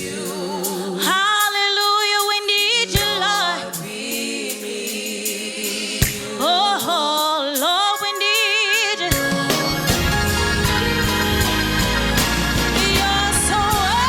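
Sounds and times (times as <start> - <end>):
group singing with vibrato: 0.0 - 14.0
band accompaniment: 8.0 - 14.0
sharp drum hits: 9.1 - 14.0.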